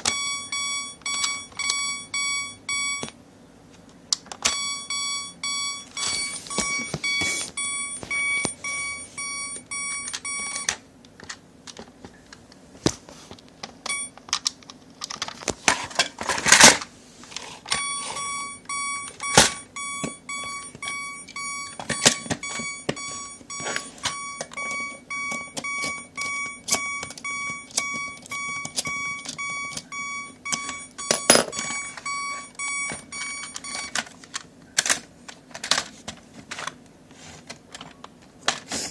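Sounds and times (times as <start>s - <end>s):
toy crossing bell beeping: 0.0s - 3.1s, 4.4s - 10.7s, 13.9s - 14.1s, 17.7s - 34.0s.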